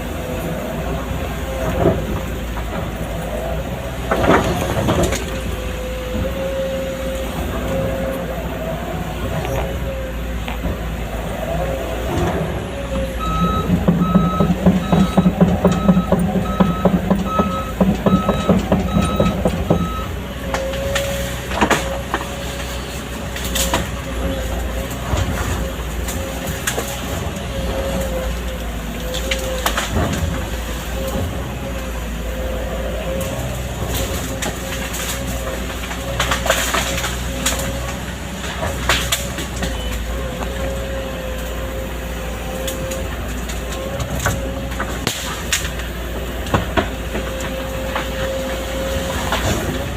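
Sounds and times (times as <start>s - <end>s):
excavator diesel engine running: 0.0s - 49.9s
travel alarm beeping: 13.2s - 20.2s.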